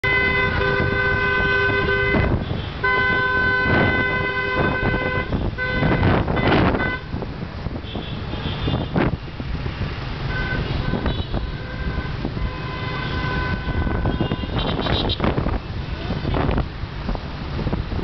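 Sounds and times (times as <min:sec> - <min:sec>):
vehicle horns honking: 0:00.0 - 0:07.2, 0:07.8 - 0:09.1, 0:10.2 - 0:15.5
traffic engine rumble: 0:00.0 - 0:18.0.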